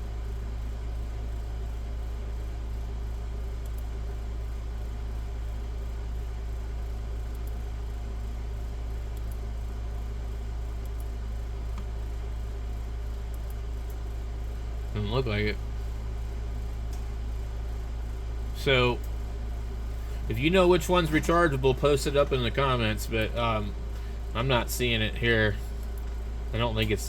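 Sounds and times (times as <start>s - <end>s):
steady low hum: 0.0s - 27.0s
faint clicks: 3.6s - 3.9s, 10.8s - 11.1s.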